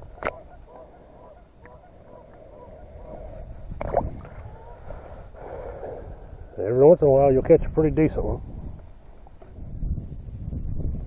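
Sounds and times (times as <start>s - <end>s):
geese honking: 0.0s - 3.4s.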